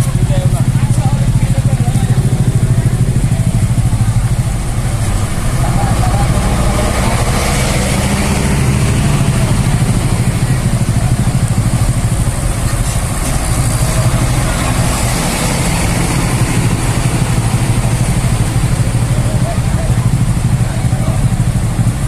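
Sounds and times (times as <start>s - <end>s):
diesel bus engine idling: 0.0s - 22.0s.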